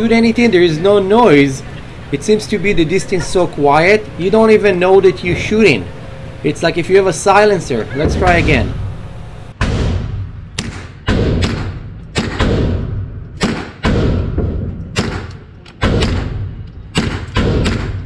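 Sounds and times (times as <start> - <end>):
rifle shots: 10.6 - 18.0.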